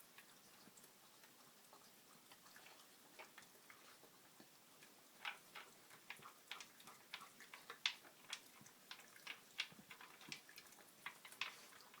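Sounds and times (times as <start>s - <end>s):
dog eating from a bowl: 0.2s - 12.0s.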